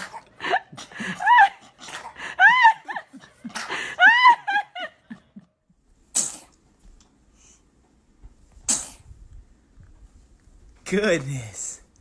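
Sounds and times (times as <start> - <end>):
baby sneezing: 6.1 - 6.6, 8.6 - 9.1.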